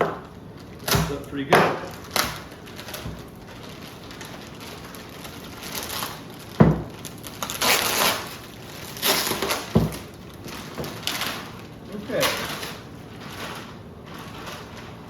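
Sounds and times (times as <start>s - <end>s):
plastic wrapping crinkling: 0.0s - 15.0s
dull thumps: 6.5s - 7.0s, 9.7s - 10.1s.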